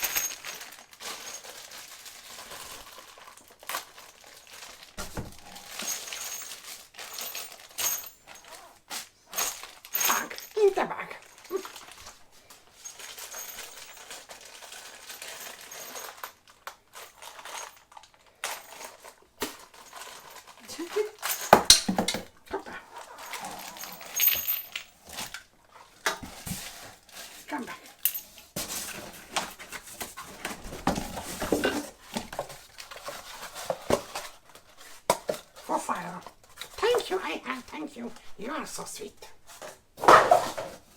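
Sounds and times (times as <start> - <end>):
plastic packaging rustling: 0.0 - 40.9
hard parts clattering: 9.4 - 22.4, 28.0 - 34.4, 39.5 - 40.9.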